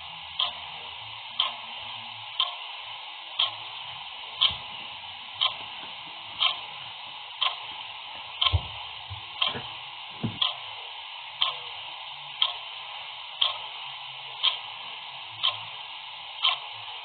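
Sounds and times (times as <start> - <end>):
constant hiss: 0.0 - 17.0
clock ticking: 0.4 - 0.8, 1.4 - 1.7, 2.4 - 2.8, 3.4 - 3.8, 4.4 - 4.7, 5.4 - 5.8, 6.4 - 6.8, 7.4 - 7.8, 8.4 - 9.7, 10.3 - 10.7, 11.4 - 11.7, 12.4 - 12.8, 13.4 - 13.8, 14.4 - 14.8, 15.4 - 17.0
soft low thumps: 8.4 - 10.5.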